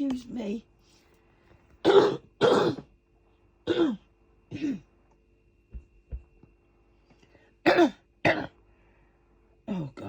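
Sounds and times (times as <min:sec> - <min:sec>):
person coughing harshly: 0:01.8 - 0:02.9, 0:03.6 - 0:04.9, 0:07.6 - 0:08.6.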